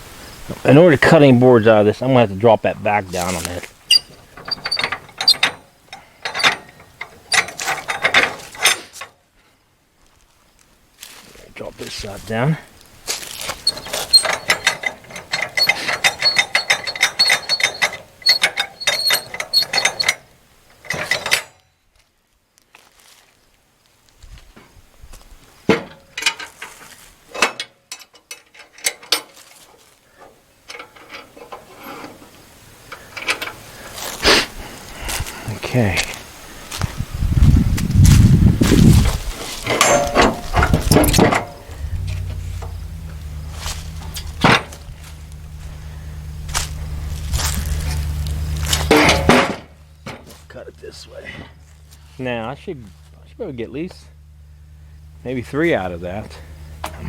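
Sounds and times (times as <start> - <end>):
metal clanks and clicks: 3.2 - 9.2, 13.4 - 21.6, 25.7 - 29.4, 30.7 - 32.2, 39.6 - 50.6, 55.2 - 57.0
metal ratchet clicking: 3.9 - 8.8, 13.6 - 20.2.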